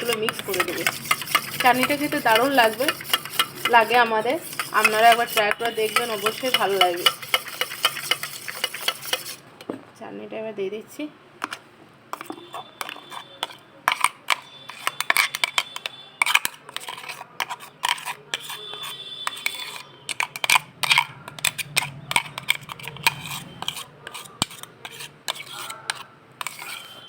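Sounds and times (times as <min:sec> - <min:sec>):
spoon clinking against dish: 0:00.0 - 0:09.4.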